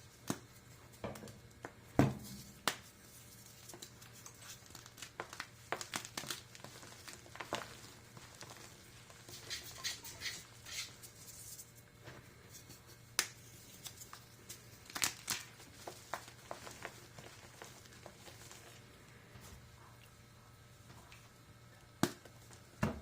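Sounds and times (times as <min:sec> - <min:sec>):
chalk crunching: 0:02.2 - 0:18.9.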